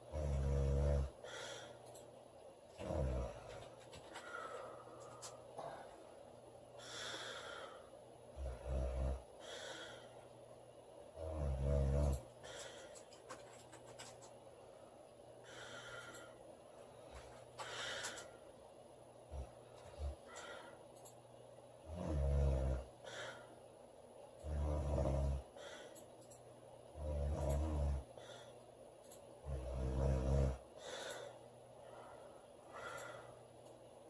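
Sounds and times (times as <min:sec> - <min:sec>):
woman snoring: 0:00.0 - 0:01.7, 0:02.8 - 0:03.5, 0:08.4 - 0:10.1, 0:11.2 - 0:12.2, 0:21.8 - 0:23.4, 0:24.4 - 0:25.8, 0:27.0 - 0:28.1, 0:29.4 - 0:31.1
breathing: 0:01.2 - 0:02.0, 0:04.0 - 0:06.1, 0:06.8 - 0:08.6, 0:09.4 - 0:10.3, 0:12.4 - 0:13.2, 0:14.8 - 0:18.4, 0:19.8 - 0:20.9, 0:23.0 - 0:23.6, 0:25.5 - 0:26.1, 0:28.1 - 0:28.7, 0:30.8 - 0:33.5.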